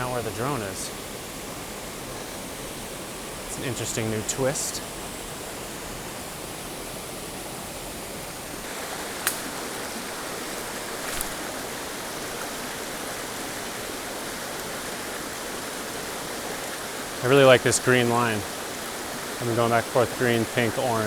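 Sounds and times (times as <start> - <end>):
creek water running: 0.0 - 21.0
short sharp clicks: 9.2 - 9.6.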